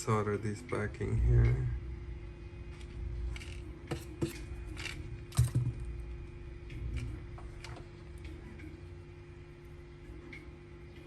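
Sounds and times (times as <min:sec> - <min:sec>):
steady low hum: 0:00.0 - 0:11.0
small tools clicking and tapping: 0:03.3 - 0:05.8.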